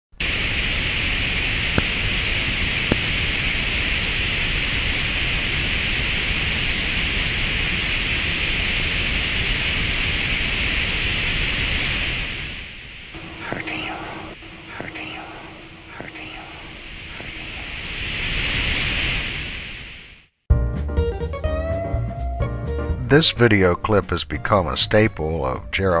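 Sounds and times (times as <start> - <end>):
rocket engine firing: 0.2 - 20.3.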